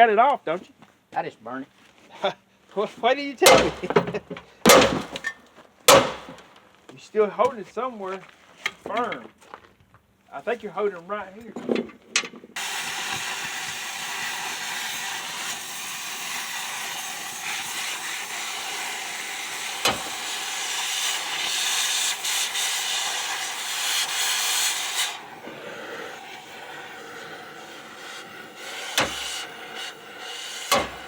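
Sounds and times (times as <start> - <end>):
sharp pop: 3.5 - 4.1, 4.7 - 5.3, 5.9 - 6.5, 19.8 - 20.2, 29.0 - 29.4, 30.7 - 31.0
cutting torch hissing: 12.6 - 31.0.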